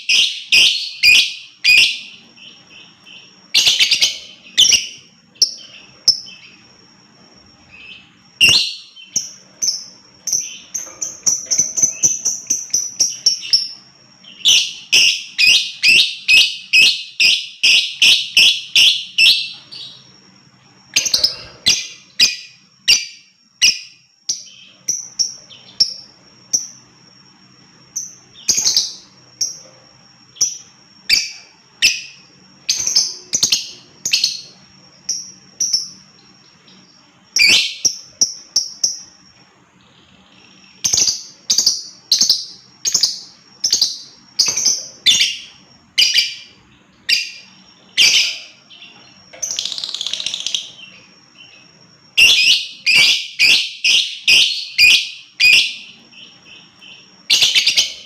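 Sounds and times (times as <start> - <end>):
lovebird chirping: 0.0 - 58.0.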